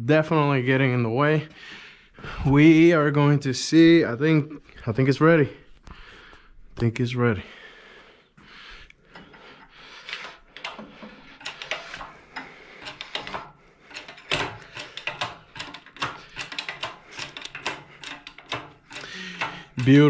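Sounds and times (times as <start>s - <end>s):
engine hoist chains clanking: 10.0s - 20.0s.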